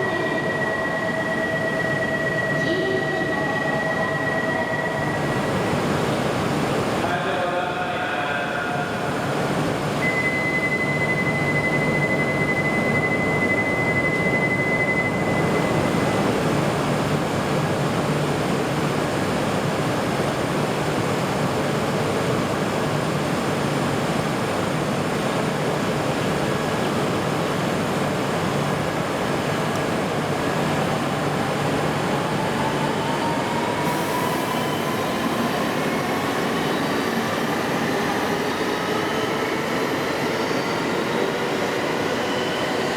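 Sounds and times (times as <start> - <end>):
steady high tone: 0.0 - 6.2, 10.0 - 16.4
train running noise: 24.2 - 42.9.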